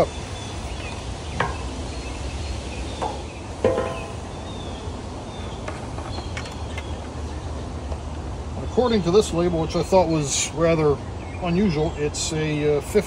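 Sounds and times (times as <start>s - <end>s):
clunks and knocks: 3.0s - 4.2s.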